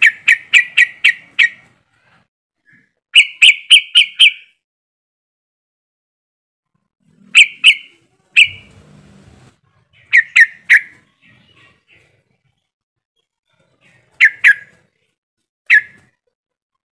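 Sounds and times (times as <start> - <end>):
bird calling sharp notes: 0.0 - 1.7, 3.2 - 4.6, 7.3 - 8.7, 10.0 - 11.1, 14.1 - 14.8, 15.7 - 16.1.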